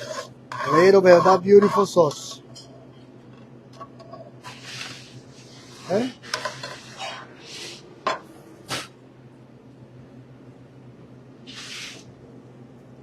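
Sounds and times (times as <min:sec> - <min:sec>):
low kitchen hum: 0:00.0 - 0:13.0
short hiss: 0:11.5 - 0:12.1.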